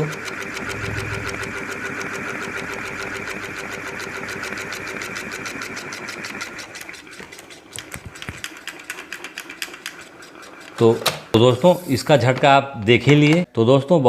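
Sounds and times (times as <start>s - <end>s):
ceiling fan whine: 0.4s - 5.3s.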